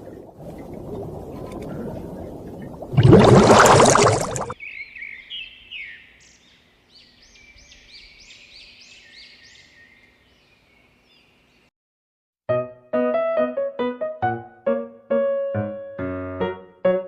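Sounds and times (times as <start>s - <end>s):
small birds chirping: 4.6s - 11.7s.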